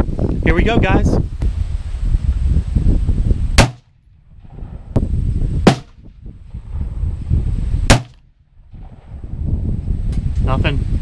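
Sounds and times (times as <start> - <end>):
low wind rumble: 0.0 - 11.0
rifle shots: 3.6 - 3.9, 5.7 - 6.0, 7.9 - 8.2.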